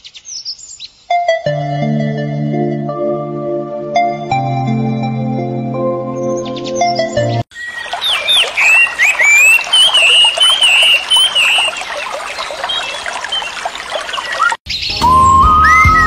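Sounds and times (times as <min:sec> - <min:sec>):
birds chirping: 0:06.1 - 0:15.8
whistled birdsong: 0:06.2 - 0:16.0.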